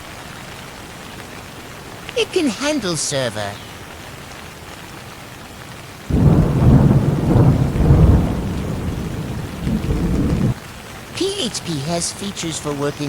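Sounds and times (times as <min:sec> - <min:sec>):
steady rain: 0:00.0 - 0:13.0
thunder rumbling: 0:06.1 - 0:10.6.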